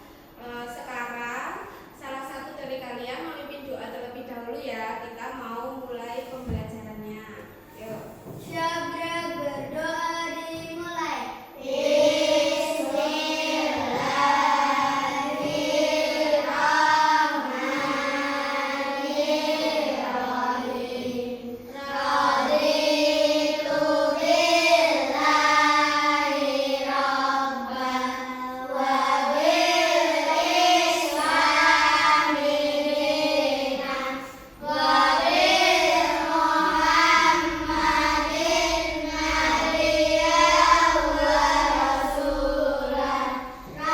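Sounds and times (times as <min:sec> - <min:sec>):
children singing in unison: 0:11.6 - 0:43.9.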